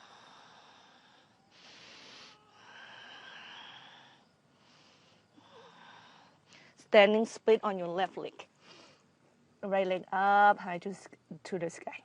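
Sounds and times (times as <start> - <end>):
faint breathing: 0.0 - 6.8, 8.5 - 9.2.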